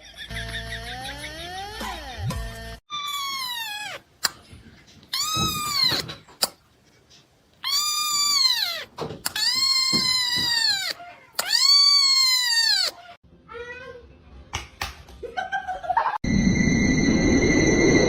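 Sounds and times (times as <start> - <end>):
cat meowing loudly: 2.9 - 4.0, 5.2 - 6.1, 7.6 - 13.2.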